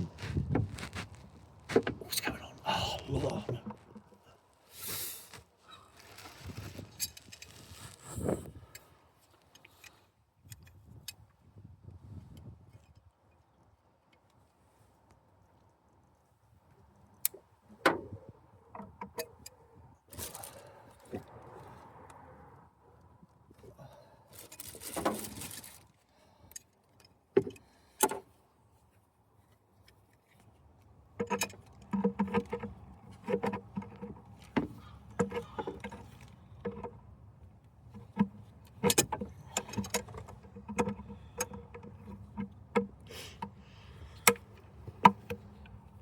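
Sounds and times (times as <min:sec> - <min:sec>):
brief rustle: 0:04.7 - 0:10.0, 0:24.3 - 0:26.0.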